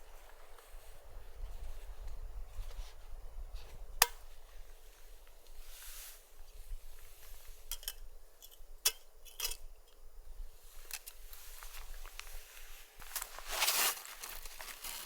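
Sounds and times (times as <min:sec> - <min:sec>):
wind rumble on microphone: 0:00.0 - 0:05.2.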